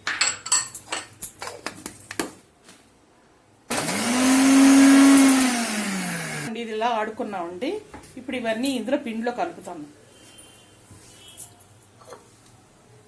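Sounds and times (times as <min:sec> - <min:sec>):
mixer grinder motor whine: 0:03.7 - 0:06.5.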